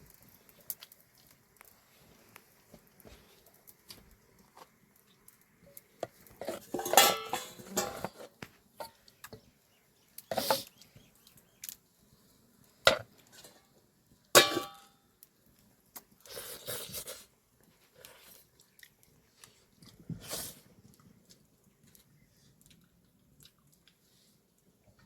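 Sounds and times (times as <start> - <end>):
kitchen utensils clinking: 6.4 - 8.2.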